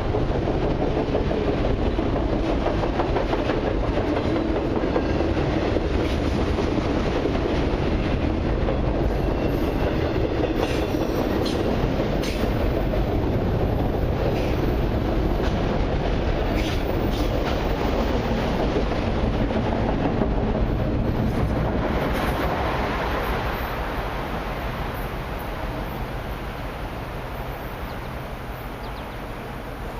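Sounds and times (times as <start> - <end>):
train wheels clacking on rails: 0.0 - 23.6.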